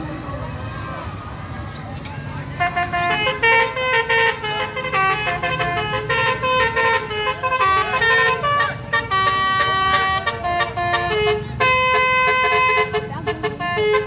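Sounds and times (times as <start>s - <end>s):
bus engine rumble: 0.0s - 14.0s
multi-tone bus horn melody: 2.4s - 14.0s.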